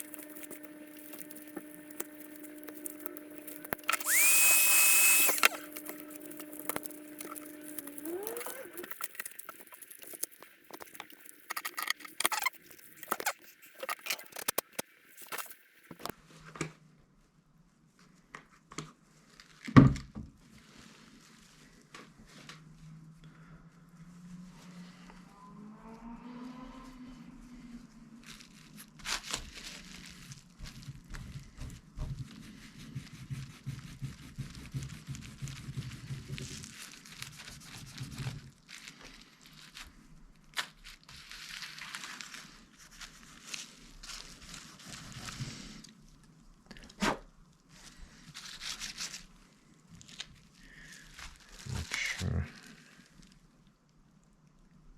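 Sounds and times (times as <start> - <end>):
adhesive and plastic tearing: 0.0 - 16.1
plastic pry tools clicking and scraping: 0.1 - 15.5.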